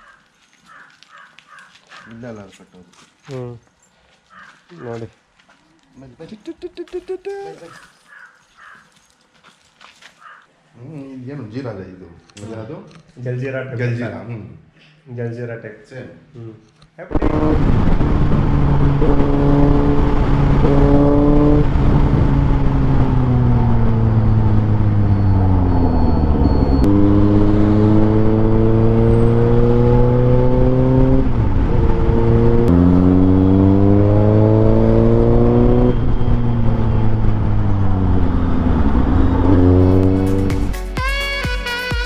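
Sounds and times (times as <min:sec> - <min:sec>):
motorcycle engine revving: 0:17.1 - 0:40.8.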